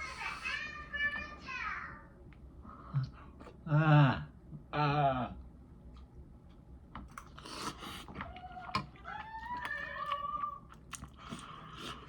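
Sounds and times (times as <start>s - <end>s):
wet chewing smacks: 7.2s - 12.0s.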